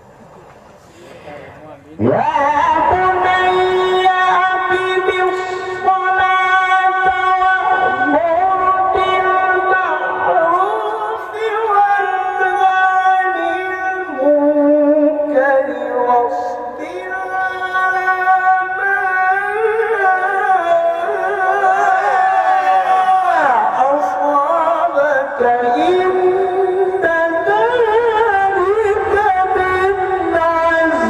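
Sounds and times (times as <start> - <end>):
person chanting melodic recitation: 0.9 - 31.0.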